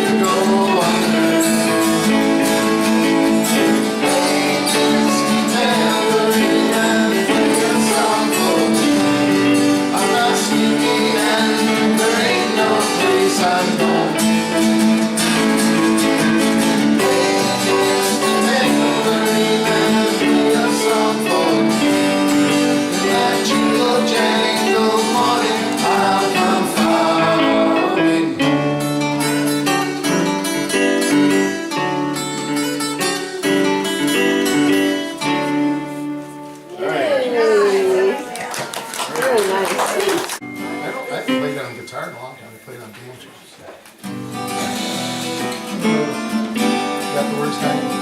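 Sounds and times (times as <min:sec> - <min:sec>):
strummed acoustic guitar: 0:00.0 - 0:37.6, 0:40.4 - 0:48.0.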